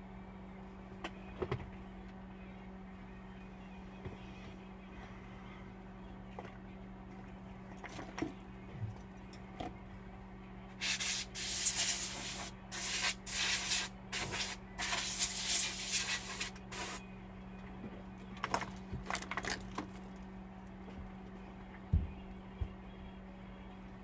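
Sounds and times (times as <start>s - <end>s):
steady low hum: 0.0s - 24.0s
short hissing bursts: 10.8s - 17.0s.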